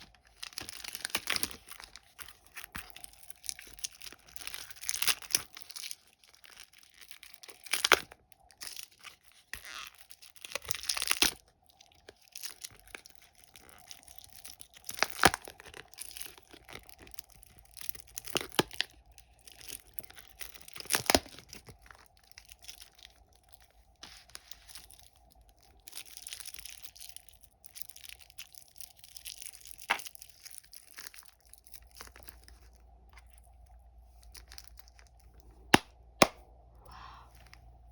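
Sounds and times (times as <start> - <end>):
plastic wrappers crinkling: 0.0 - 35.8
faint steady hum: 0.0 - 37.9
sharp wrapper snaps: 27.8 - 32.7.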